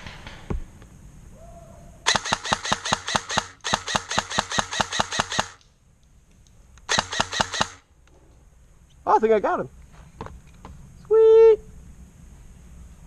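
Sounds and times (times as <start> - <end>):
airsoft gun full-auto bursts: 2.1 - 5.6, 6.8 - 7.9.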